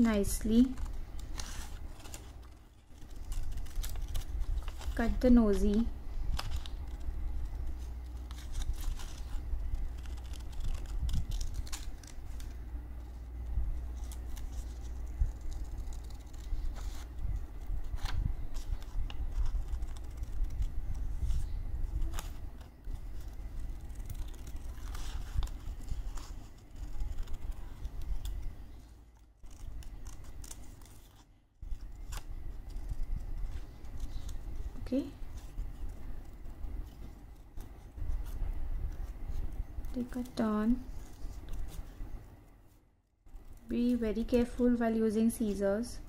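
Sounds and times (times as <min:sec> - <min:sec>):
scissors snipping paper: 0:00.0 - 0:42.0
paper rustling: 0:00.0 - 0:45.7.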